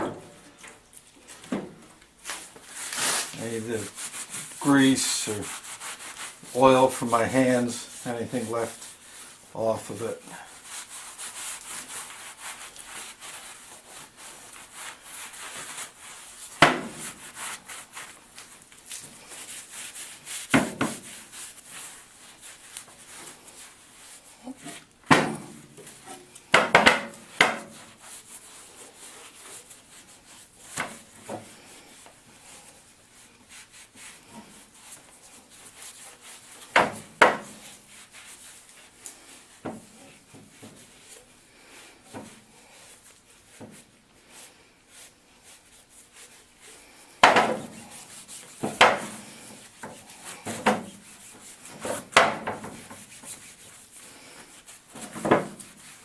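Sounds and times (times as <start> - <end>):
rag rubbing on metal parts: 2.3 - 24.8.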